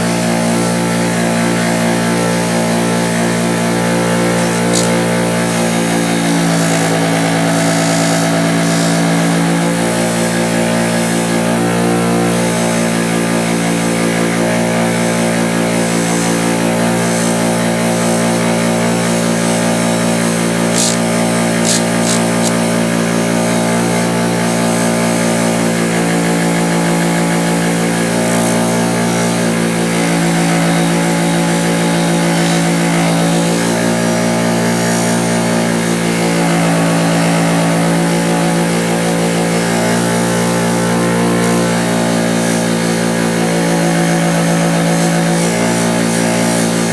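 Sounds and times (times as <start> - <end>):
bench grinder running: 0.0 - 46.9
sharp clicks: 4.5 - 5.1, 20.7 - 22.6.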